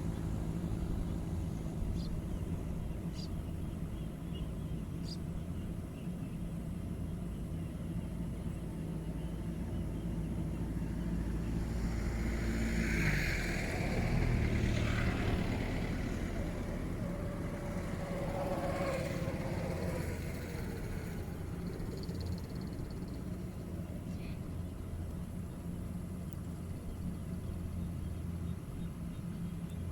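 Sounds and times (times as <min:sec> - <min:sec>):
combine harvester engine running: 0:08.9 - 0:26.5.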